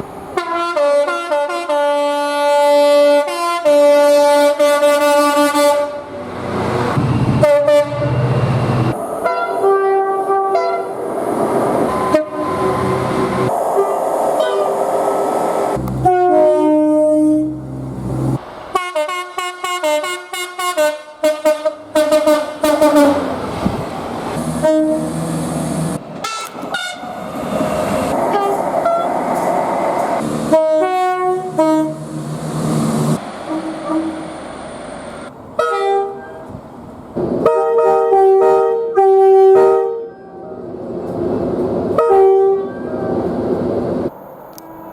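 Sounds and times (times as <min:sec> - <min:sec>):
rumble and hiss of moving trains: 0:00.0 - 0:44.9
train horns: 0:00.3 - 0:06.3, 0:07.3 - 0:08.4, 0:09.2 - 0:11.0, 0:11.9 - 0:23.4, 0:24.4 - 0:25.4, 0:26.2 - 0:27.1, 0:28.2 - 0:29.2, 0:30.2 - 0:32.2, 0:33.1 - 0:34.3, 0:35.6 - 0:36.6, 0:37.4 - 0:40.6, 0:42.0 - 0:43.1.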